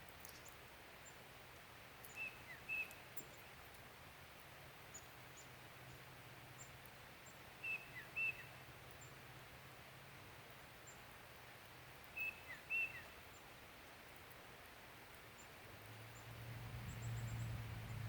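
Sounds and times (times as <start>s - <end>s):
small bird chirping: 0.2s - 1.2s, 2.0s - 3.6s, 4.9s - 9.2s, 12.1s - 13.5s, 15.3s - 18.0s.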